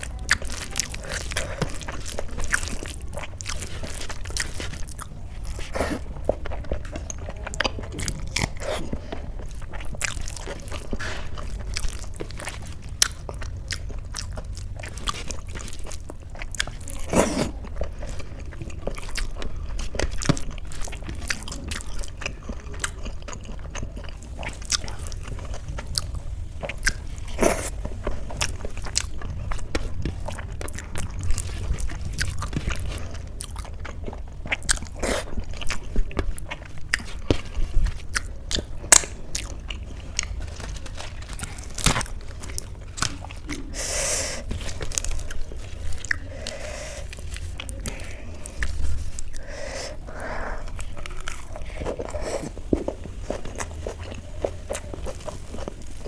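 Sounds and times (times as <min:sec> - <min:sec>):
chewing and biting food: 0:00.0 - 0:56.0
steady low hum: 0:20.8 - 0:56.0.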